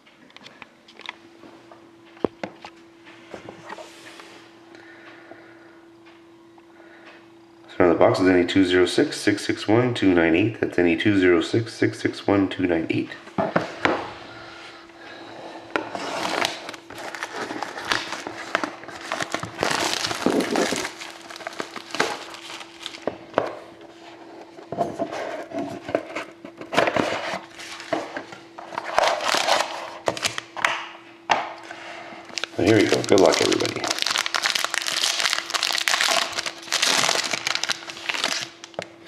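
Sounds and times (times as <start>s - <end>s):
cardboard rustling: 15.8s - 23.2s, 32.3s - 38.8s
plastic wrap crinkling: 16.0s - 23.2s, 28.8s - 30.4s, 32.3s - 38.9s.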